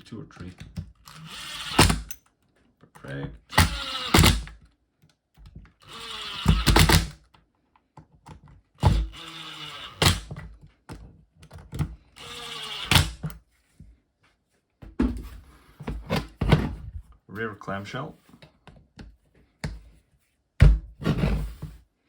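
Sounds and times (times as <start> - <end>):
power driver driving screws: 1.0 - 2.2, 3.5 - 4.6, 5.8 - 7.2, 8.8 - 10.4, 12.2 - 13.4.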